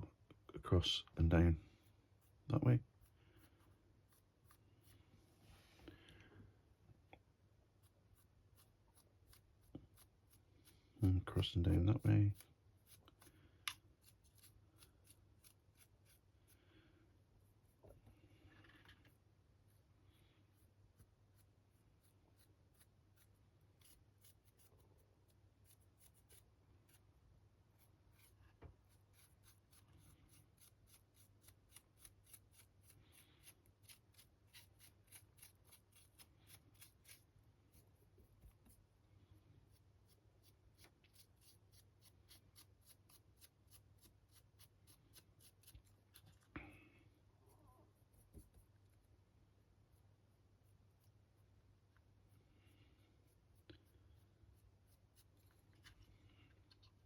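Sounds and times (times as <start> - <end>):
dry brush scratching: 2.1 - 5.7, 7.7 - 16.6, 19.6 - 39.0, 39.6 - 46.3.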